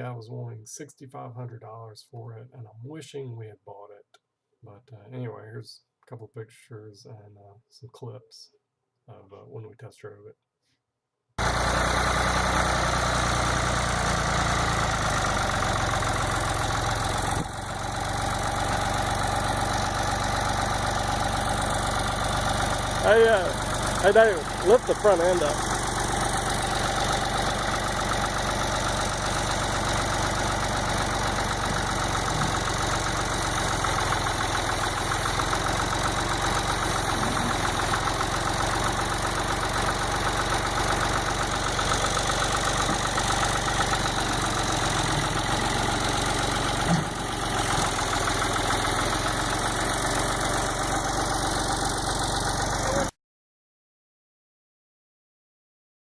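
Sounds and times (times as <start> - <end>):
backhoe engine idling: 11.4 - 53.1.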